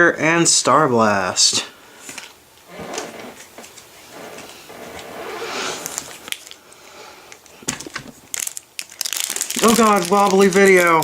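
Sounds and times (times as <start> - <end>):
cards and foil packaging rustling: 2.1 - 6.7, 7.3 - 11.0.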